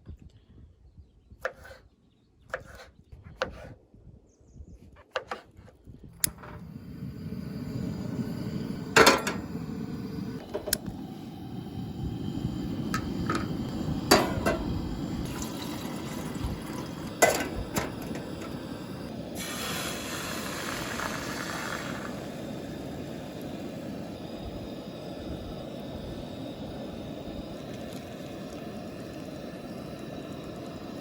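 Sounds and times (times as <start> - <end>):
steady low rumble: 6.0 - 19.4, 22.1 - 31.0
liquid pouring: 12.8 - 18.8, 19.4 - 23.1, 27.5 - 31.0
cookware clinking and knocking: 14.1 - 14.6, 17.2 - 18.3.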